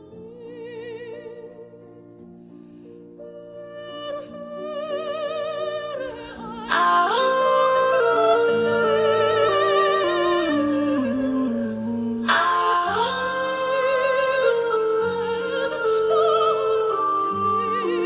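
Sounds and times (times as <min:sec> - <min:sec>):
solo voice singing with vibrato: 0:03.6 - 0:18.0.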